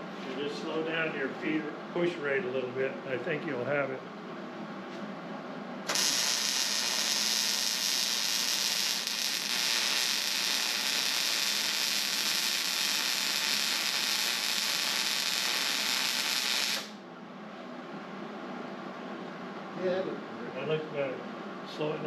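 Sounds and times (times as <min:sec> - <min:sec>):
welding arc crackling: 0:05.9 - 0:17.0.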